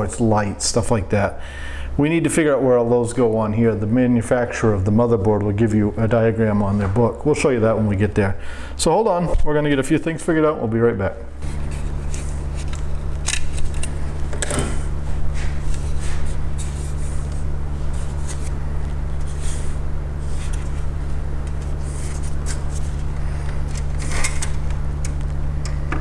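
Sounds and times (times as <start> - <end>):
steady low hum: 0.0 - 26.0
computer parts clicking and rustling: 21.5 - 26.0.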